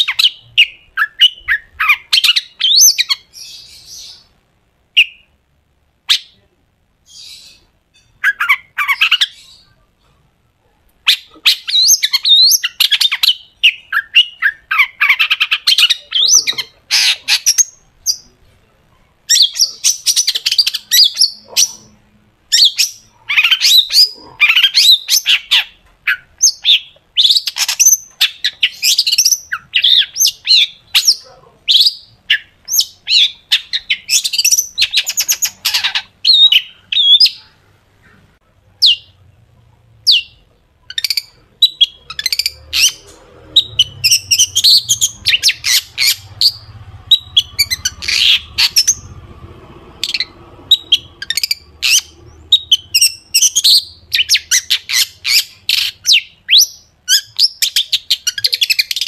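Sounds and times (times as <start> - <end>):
shrike singing harsh chattering: 41.0 - 49.2.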